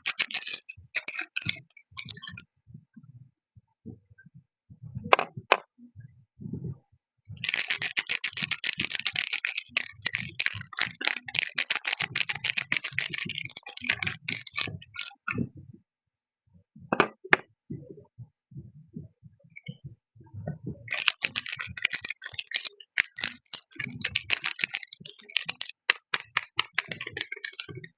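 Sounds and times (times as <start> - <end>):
wrapping crinkling: 0.0 - 2.3, 7.4 - 15.2, 20.9 - 27.7.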